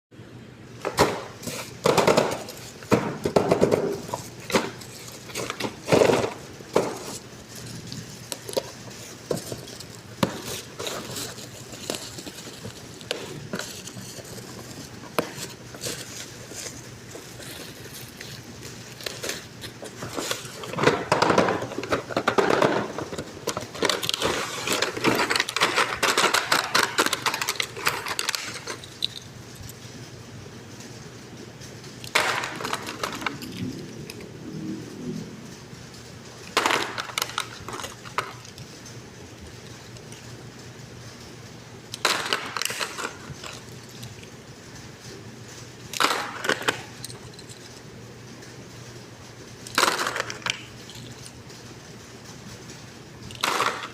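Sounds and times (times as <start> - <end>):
packaging crinkling and rustling: 0.8 - 29.8, 31.9 - 34.2, 36.0 - 40.4, 41.9 - 48.5, 49.6 - 51.7
toy cars clicking and knocking: 17.4 - 29.7, 32.0 - 34.2, 36.4 - 38.7, 41.9 - 44.3, 45.9 - 47.8, 49.6 - 51.4, 53.2 - 53.9.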